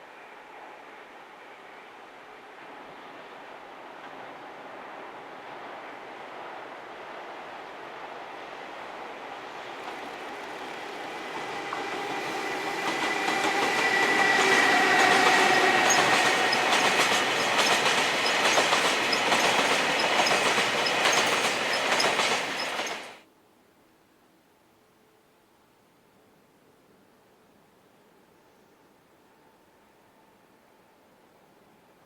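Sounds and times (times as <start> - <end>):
locomotive whine: 8.9 - 23.2
train wheels clattering over rail joints: 9.8 - 23.2.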